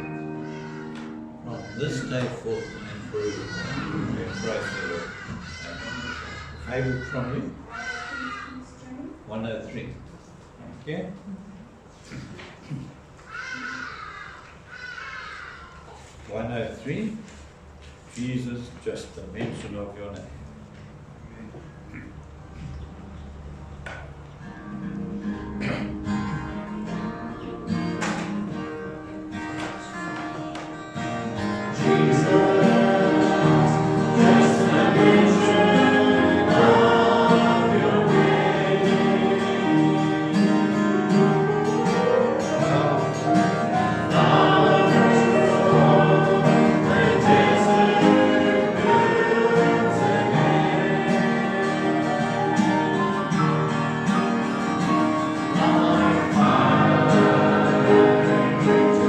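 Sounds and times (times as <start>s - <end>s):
guitar accompaniment: 0.0s - 5.4s, 24.1s - 59.0s
congregation singing a hymn: 0.0s - 6.4s, 31.0s - 59.0s.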